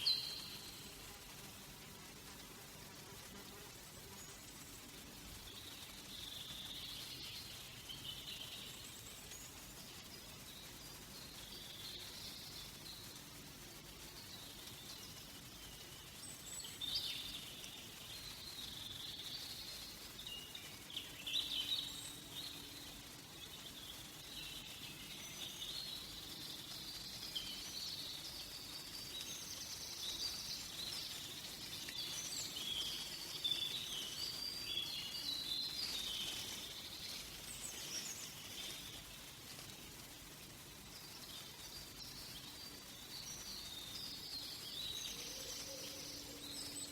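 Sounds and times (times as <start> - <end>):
small birds chirping and warbling: 0.0 - 46.9.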